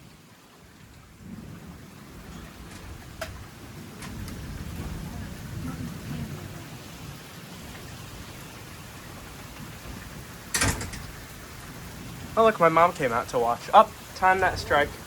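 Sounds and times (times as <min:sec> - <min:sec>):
heavy rain falling: 0:00.0 - 0:15.0
low rumble of thunder: 0:00.6 - 0:15.0
sharp crack of thunder: 0:01.2 - 0:06.6, 0:09.6 - 0:12.4, 0:14.2 - 0:15.0.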